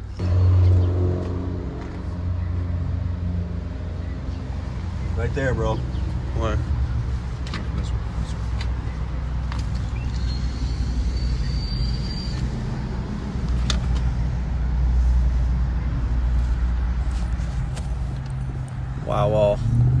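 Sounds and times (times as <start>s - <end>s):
low engine-like drone: 0.0s - 7.0s.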